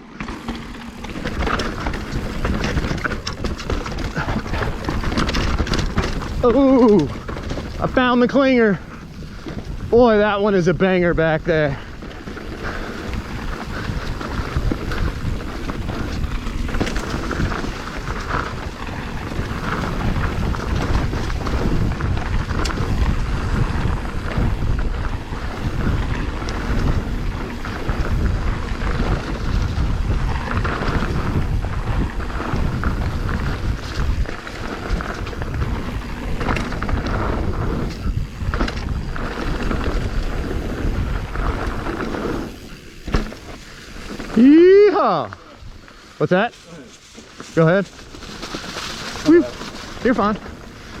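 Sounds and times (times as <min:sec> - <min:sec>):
bike knocking and rattling: 0:00.0 - 0:51.0
bike tyres on dirt: 0:00.0 - 0:51.0
wind rumble on microphone: 0:00.0 - 0:51.0.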